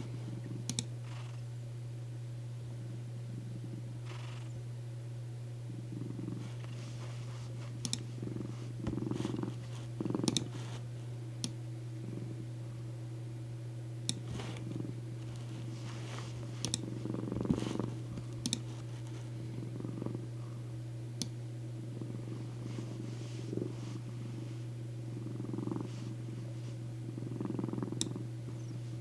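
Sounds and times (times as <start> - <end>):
cat purring: 0.0 - 1.5, 2.7 - 4.6, 5.6 - 11.2, 11.9 - 13.0, 14.1 - 20.8, 21.7 - 29.0
steady low hum: 0.0 - 29.0
faint sharp clicks: 0.7 - 0.9, 7.8 - 8.1, 10.2 - 10.5, 18.4 - 18.7, 28.0 - 28.2.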